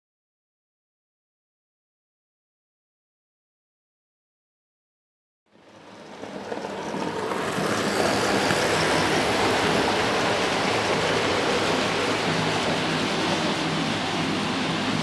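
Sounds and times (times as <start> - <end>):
train rushing on rails: 5.5 - 15.0.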